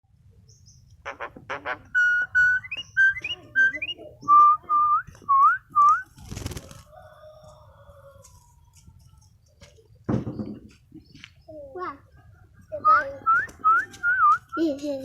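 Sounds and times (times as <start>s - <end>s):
starling whistling: 1.9s - 6.1s.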